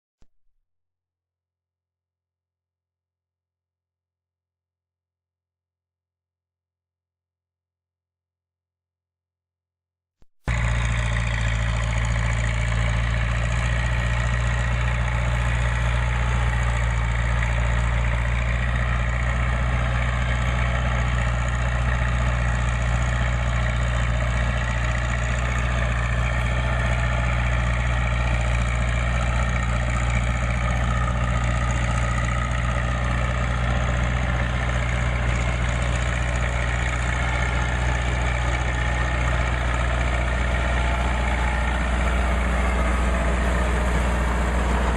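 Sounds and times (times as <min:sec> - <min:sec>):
tractor engine running: 0:10.4 - 0:44.9.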